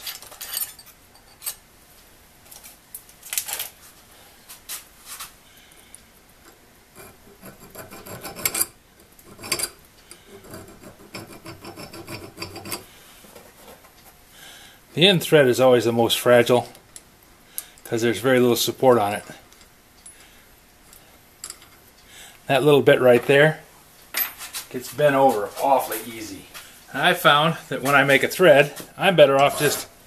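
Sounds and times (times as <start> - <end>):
file rasping on steel threads: 7.0 - 9.6, 10.3 - 12.9.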